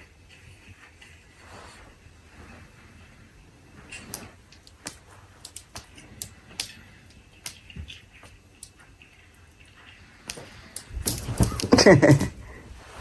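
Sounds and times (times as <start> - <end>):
light clicks and taps: 3.9 - 9.2.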